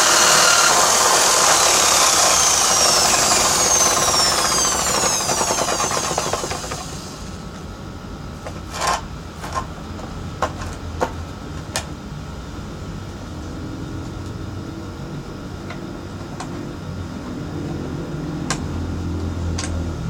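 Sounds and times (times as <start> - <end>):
drill motor winding down: 0.0 - 7.5.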